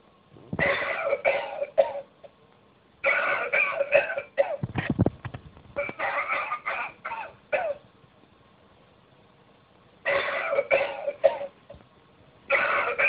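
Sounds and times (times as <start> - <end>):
recorded coughing through small speaker: 0.6 - 2.1, 3.0 - 5.1, 5.8 - 7.9, 10.0 - 11.7, 12.5 - 13.0.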